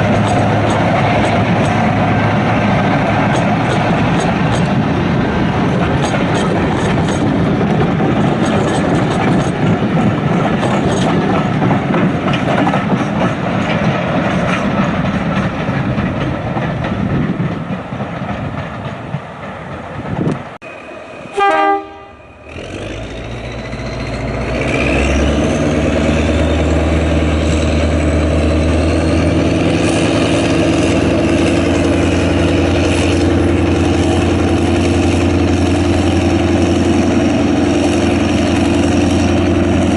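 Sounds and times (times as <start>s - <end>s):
rail clicks: 0.0s - 39.9s
train rumbling past: 0.0s - 39.9s
train horn blast: 21.2s - 22.6s.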